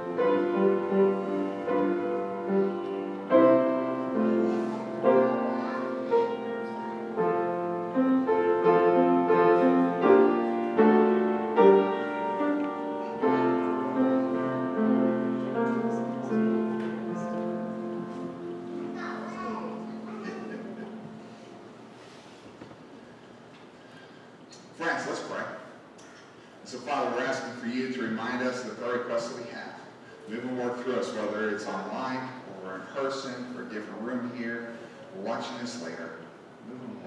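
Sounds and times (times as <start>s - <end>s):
piano playing sustained chords: 0.0s - 22.0s.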